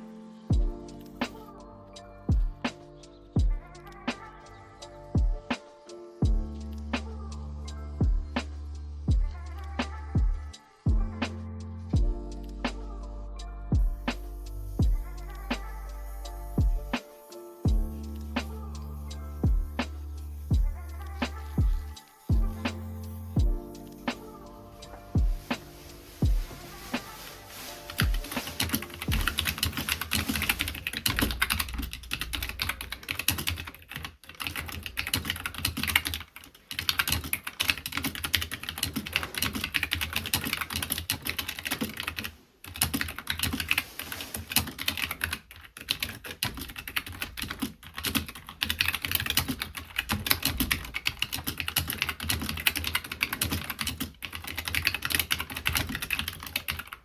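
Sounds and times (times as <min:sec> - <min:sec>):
mechanical keyboard typing: 0:28.3 - 0:57.0.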